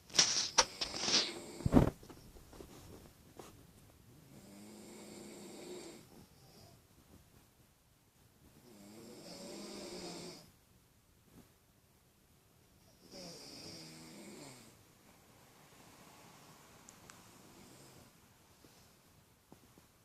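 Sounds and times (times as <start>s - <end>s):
person snoring: 8.7s - 10.5s, 13.0s - 14.8s.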